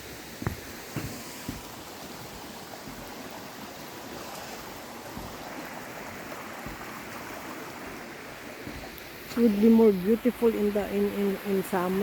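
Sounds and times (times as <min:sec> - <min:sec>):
creek water rushing over rocks: 0:00.0 - 0:12.0.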